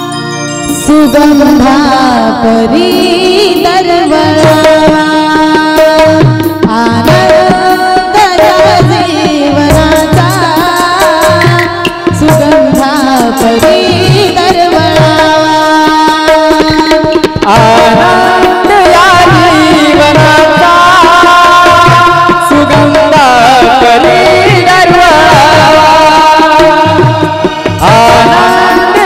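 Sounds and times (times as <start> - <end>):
wavering melody line: 0.0 - 2.6
tabla drums: 0.0 - 29.0.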